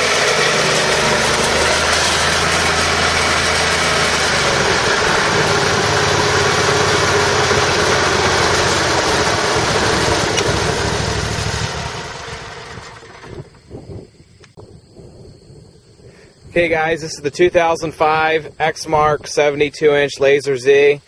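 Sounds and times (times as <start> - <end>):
mower engine running: 0.0 - 13.7.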